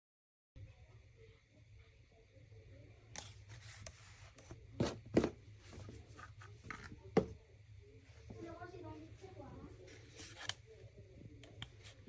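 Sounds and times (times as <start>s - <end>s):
objects rustling and scraping: 3.2s - 7.4s, 8.0s - 10.6s.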